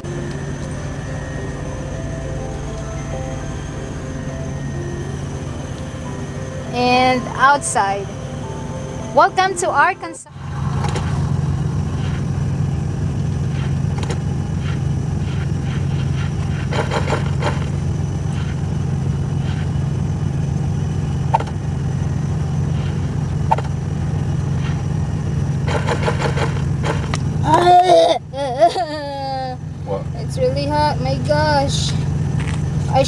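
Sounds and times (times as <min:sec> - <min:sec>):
diesel truck engine humming: 0:00.0 - 0:33.0.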